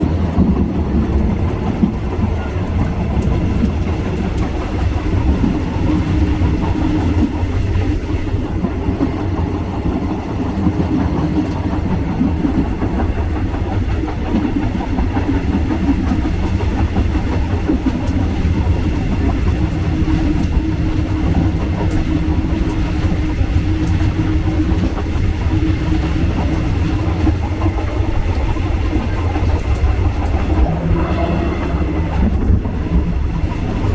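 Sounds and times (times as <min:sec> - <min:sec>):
train rumbling along track: 0:00.0 - 0:33.9.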